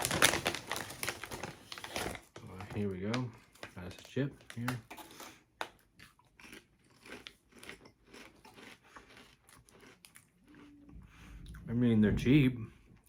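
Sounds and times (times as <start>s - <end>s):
person crunching potato chip: 5.0s - 10.9s.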